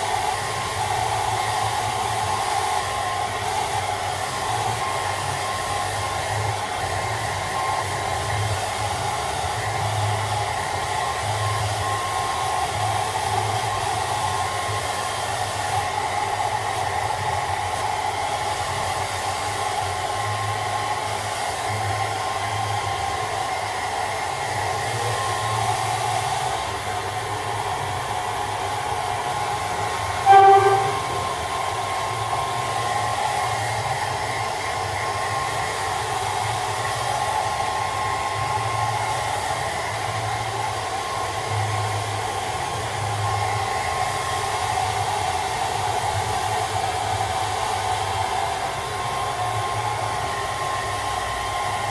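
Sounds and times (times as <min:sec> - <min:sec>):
hair dryer blowing: 0:00.0 - 0:51.9
short loud pitched tone: 0:30.3 - 0:31.4.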